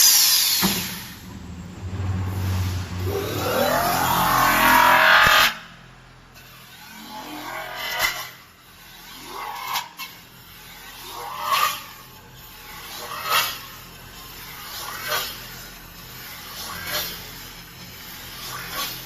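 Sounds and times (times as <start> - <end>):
machine hum: 0.6 - 8.7
roller scraping metal: 0.9 - 19.0.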